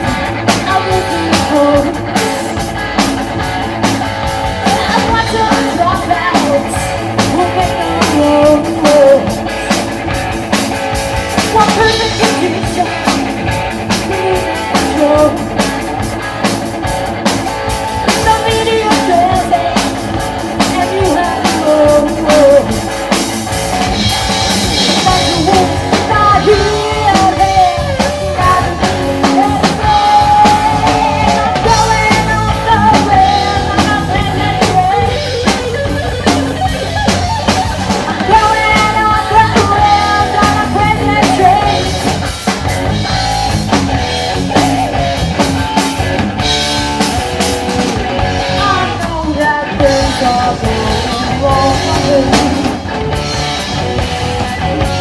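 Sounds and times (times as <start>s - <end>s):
person singing: 0.0s - 2.9s, 4.6s - 9.6s, 11.4s - 15.7s, 18.1s - 22.9s, 24.9s - 36.7s, 37.9s - 42.1s, 48.4s - 52.8s
bass guitar: 0.0s - 55.0s
drum kit: 0.0s - 55.0s
electric guitar: 0.0s - 55.0s.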